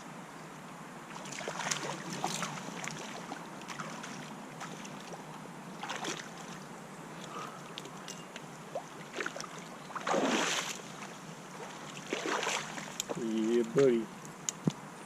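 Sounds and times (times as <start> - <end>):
stream water running: 0.5 - 14.7
water splashes: 1.1 - 6.7, 8.7 - 14.0.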